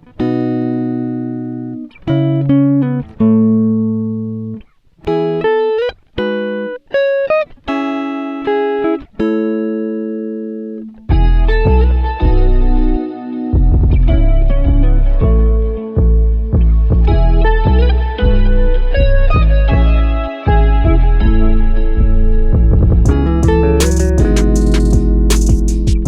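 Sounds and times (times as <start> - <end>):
slow plucked guitar melody: 0.0 - 26.0.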